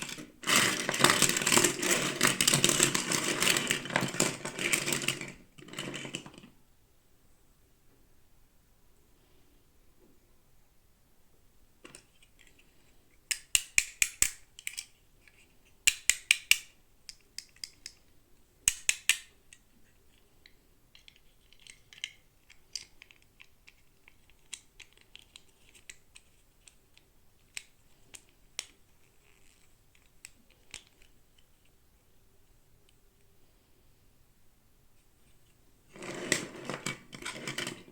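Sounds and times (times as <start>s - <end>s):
toy packaging clicking and crackling: 13.3s - 15.0s, 21.0s - 31.2s.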